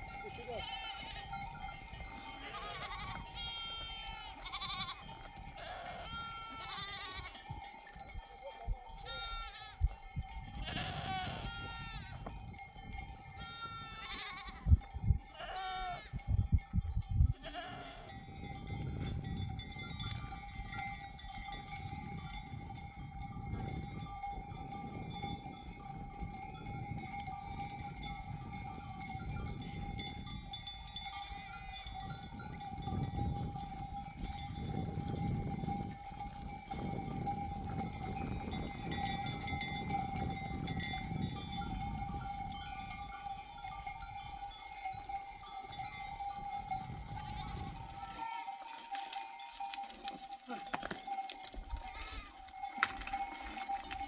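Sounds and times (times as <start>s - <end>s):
sheep bells jangling: 0.0s - 54.0s
sheep bleating: 0.4s - 1.2s, 2.3s - 5.0s, 5.6s - 7.4s, 9.0s - 9.8s, 10.6s - 12.2s, 13.4s - 14.7s, 15.4s - 16.1s, 17.4s - 18.1s, 47.9s - 48.8s, 51.8s - 52.4s.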